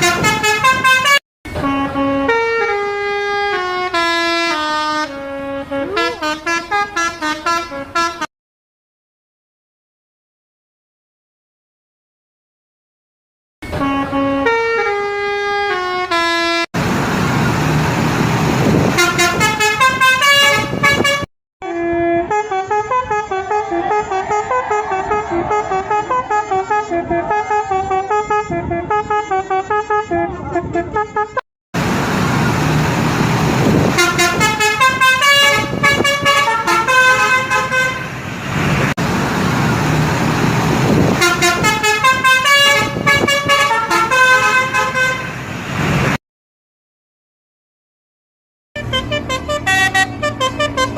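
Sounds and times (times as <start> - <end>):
musical bus horns playing melodies: 0.0 - 8.3, 13.6 - 16.7, 17.6 - 38.9, 39.8 - 45.6, 48.8 - 50.9
street noise: 0.0 - 8.3, 13.6 - 46.2, 48.8 - 50.9
engine rumble: 16.8 - 29.7, 31.8 - 46.2, 48.8 - 50.9.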